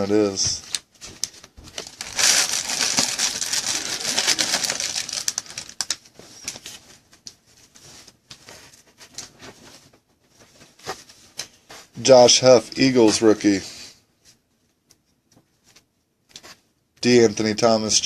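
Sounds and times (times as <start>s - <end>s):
trading cards crinkling and rustling: 0.4s - 11.7s.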